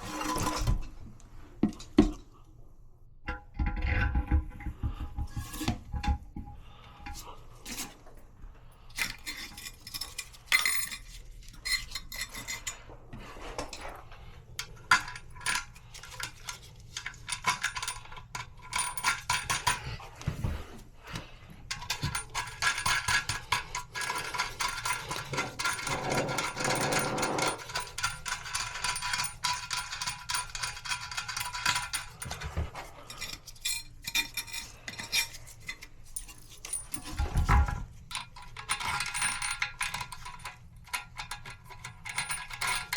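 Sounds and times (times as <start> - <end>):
rattling and scraping: 14.9 - 42.9.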